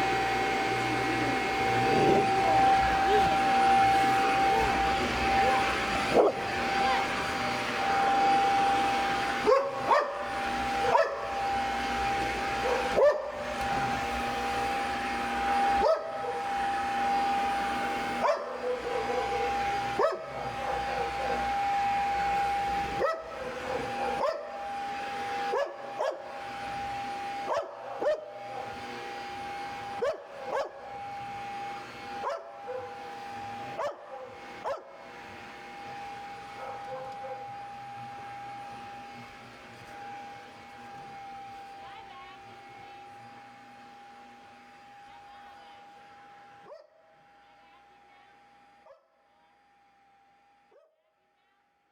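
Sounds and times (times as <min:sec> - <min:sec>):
dog barking: 0:04.2 - 0:06.5, 0:09.4 - 0:10.2, 0:10.8 - 0:11.3, 0:12.6 - 0:13.4, 0:15.8 - 0:16.5, 0:18.2 - 0:21.6, 0:23.0 - 0:24.6, 0:25.4 - 0:26.3, 0:27.5 - 0:28.8, 0:30.0 - 0:30.8, 0:32.2 - 0:33.0, 0:33.7 - 0:34.9, 0:36.6 - 0:37.5.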